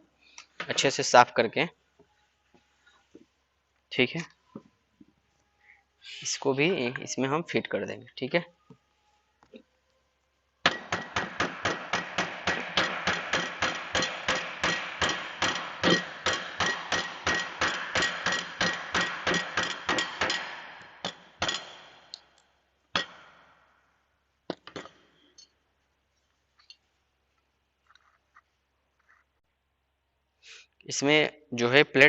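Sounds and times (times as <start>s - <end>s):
hammer tapping metal: 10.6s - 22.1s, 22.9s - 23.4s.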